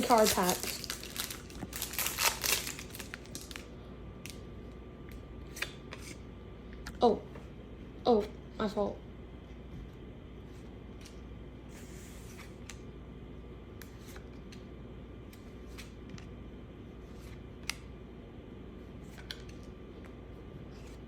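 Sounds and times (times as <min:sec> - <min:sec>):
wrapper crinkling: 0:00.0 - 0:03.7.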